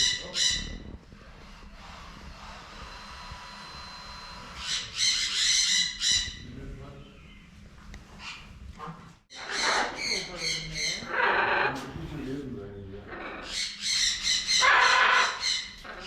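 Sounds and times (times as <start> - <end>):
bird calling: 9.3 - 12.0, 13.0 - 16.0.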